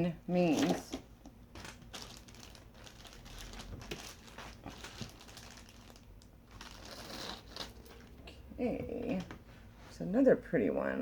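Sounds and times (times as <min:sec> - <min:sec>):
packaging crinkling: 0:01.5 - 0:08.2.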